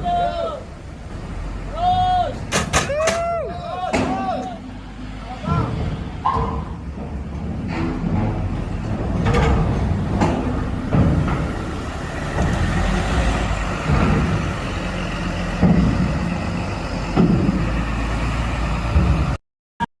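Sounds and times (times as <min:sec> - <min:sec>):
bus engine running: 0:00.0 - 0:19.4
bump: 0:05.4 - 0:14.8, 0:15.5 - 0:17.9.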